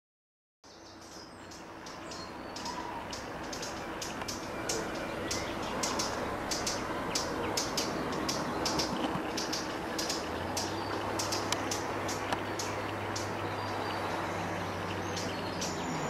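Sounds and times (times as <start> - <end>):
outdoor noise: 0.6 - 16.0
small birds chirping: 0.6 - 16.0
low steady hum: 0.7 - 16.0.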